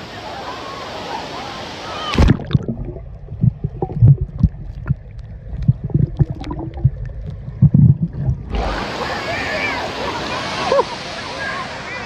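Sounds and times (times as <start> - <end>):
pool hiss: 0.0 - 4.1, 8.4 - 12.0
gurgling water: 2.0 - 10.9
underwater thumps: 2.1 - 8.8.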